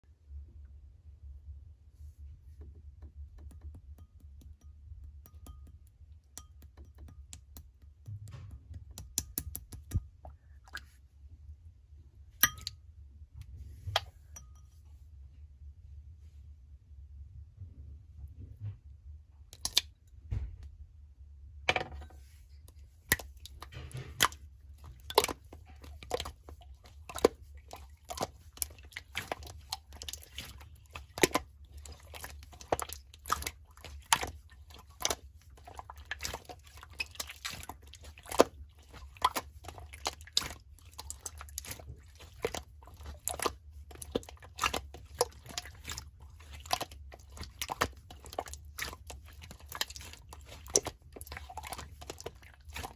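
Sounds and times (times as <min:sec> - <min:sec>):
slime clicking and popping: 0:08.9 - 0:10.0.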